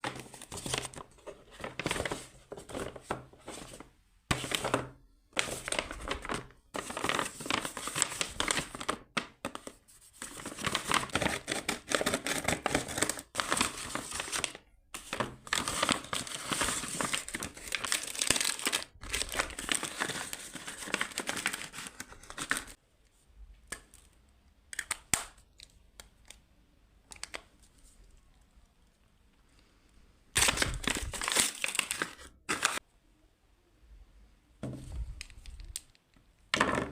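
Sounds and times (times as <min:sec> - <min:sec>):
packaging crinkling and tearing: 0:05.4 - 0:09.6, 0:10.2 - 0:22.8, 0:30.4 - 0:32.8.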